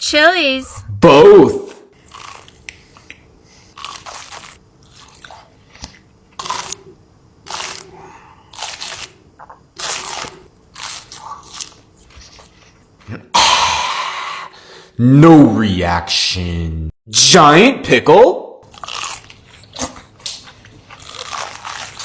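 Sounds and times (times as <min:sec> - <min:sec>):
crunchy chewing: 0:02.0 - 0:13.1, 0:18.6 - 0:22.0.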